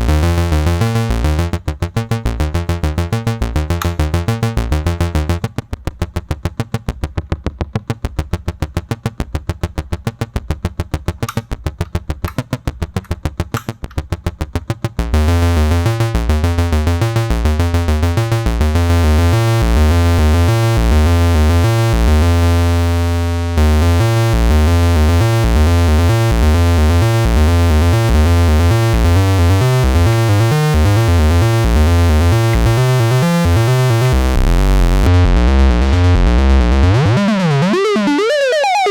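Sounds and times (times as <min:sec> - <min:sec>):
synthesizer arpeggio: 0:29.6 - 0:38.9.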